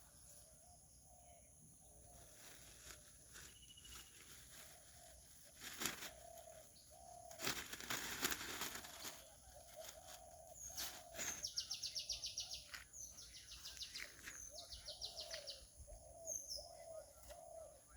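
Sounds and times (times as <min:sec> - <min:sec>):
rustle: 0:02.0 - 0:13.0
songbird trilling: 0:03.3 - 0:07.7, 0:08.8 - 0:17.9
short low bird calls: 0:08.6 - 0:17.9.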